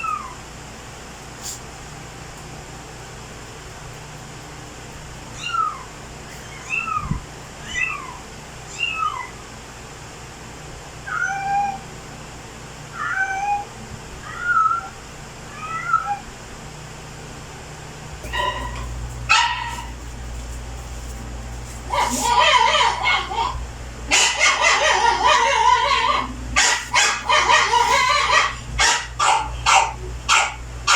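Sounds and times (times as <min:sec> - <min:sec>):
cat meowing: 0:11.1 - 0:11.8, 0:13.0 - 0:14.9, 0:15.5 - 0:16.3.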